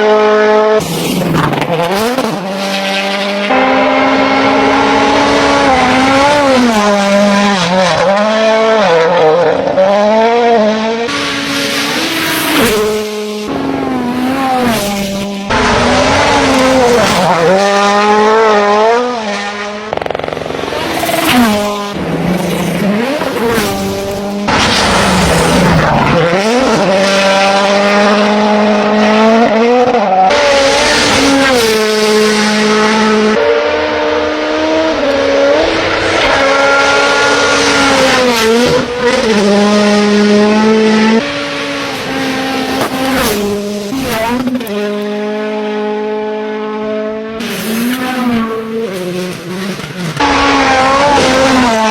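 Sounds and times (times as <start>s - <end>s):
rally car engine revving: 0.0s - 51.9s.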